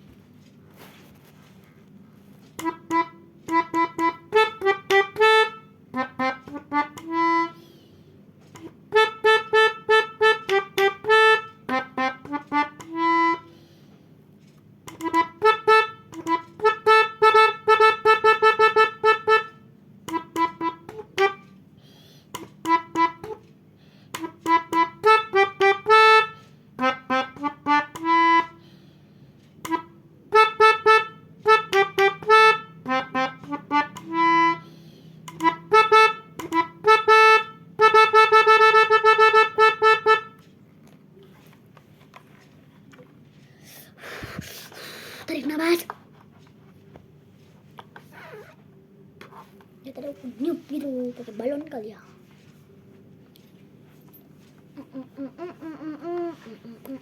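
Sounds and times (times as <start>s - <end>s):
melodica quick repeated notes: 2.6s - 7.6s, 8.6s - 13.6s, 14.9s - 21.6s, 22.3s - 23.4s, 24.1s - 28.6s, 29.6s - 40.5s.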